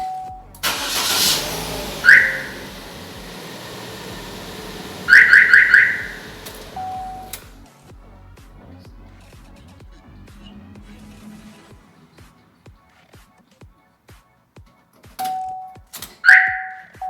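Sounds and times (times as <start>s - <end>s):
car alarm chirps: 0.0s - 7.5s, 15.3s - 17.0s.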